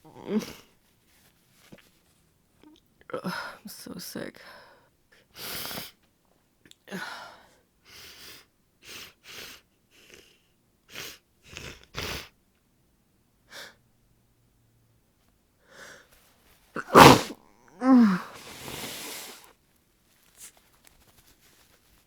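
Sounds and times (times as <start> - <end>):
woman sneezing: 16.8 - 18.6
woman sniffling: 16.8 - 19.5.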